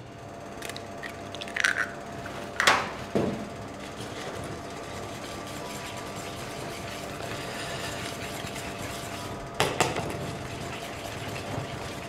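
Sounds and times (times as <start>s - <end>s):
batter stirring in a bowl: 3.7s - 12.0s.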